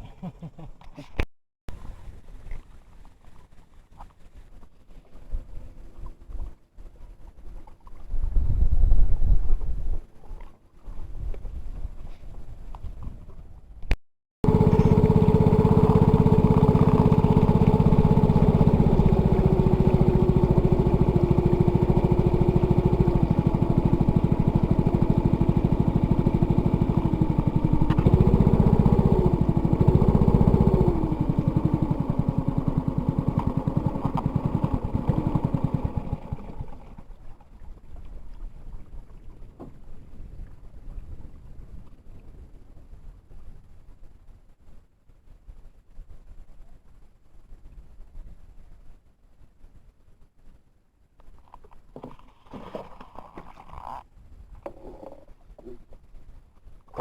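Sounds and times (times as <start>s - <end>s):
small engine running: 14.4s - 37.1s.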